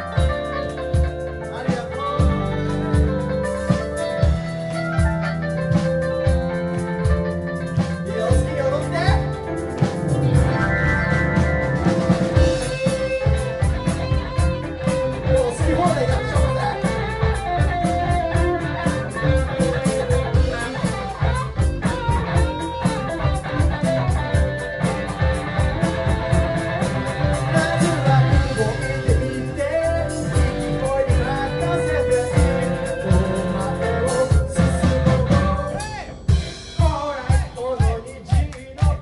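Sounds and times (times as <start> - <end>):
drums with cymbal beat: 0.0 - 39.0
electric guitar: 0.0 - 39.0
person singing: 26.6 - 36.2, 36.8 - 39.0.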